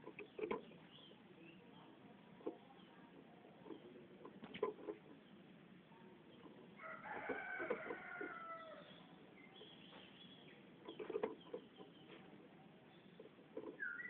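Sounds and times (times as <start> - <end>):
drawn-out bird call: 13.0 - 14.0.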